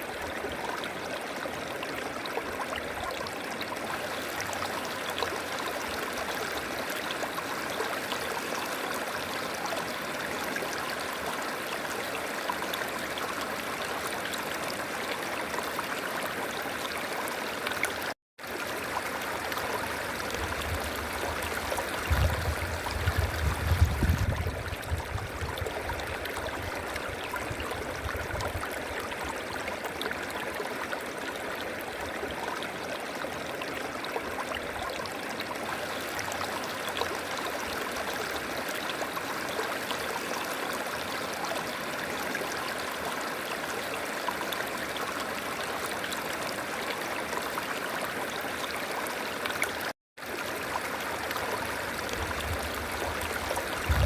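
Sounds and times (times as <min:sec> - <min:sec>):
low rumble: 0:52.2 - 0:54.0.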